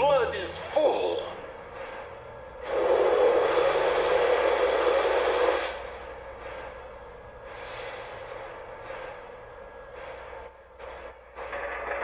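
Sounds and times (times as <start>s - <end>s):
hiss of venting steam: 2.6s - 6.8s, 7.4s - 9.2s.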